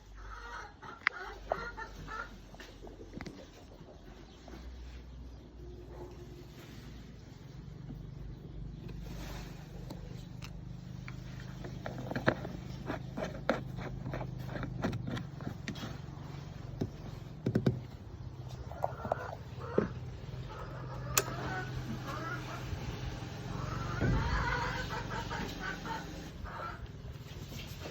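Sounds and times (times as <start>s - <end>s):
sharp clicks and knocks: 16.8s - 18.1s.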